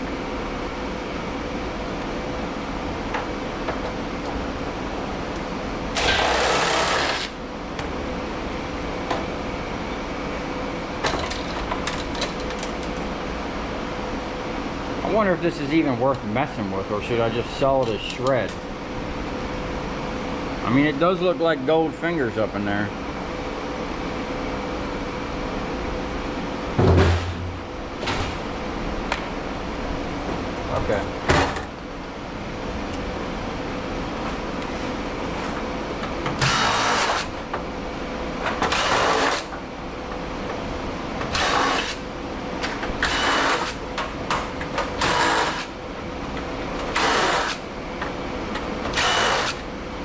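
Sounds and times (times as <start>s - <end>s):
steady hum: 0.0s - 50.0s
metal clunk: 26.8s - 28.4s.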